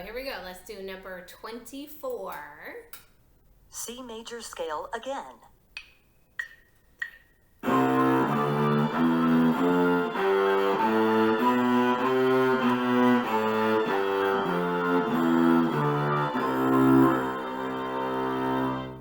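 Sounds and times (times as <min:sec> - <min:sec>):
cello playing bowed scale: 0:07.6 - 0:19.0.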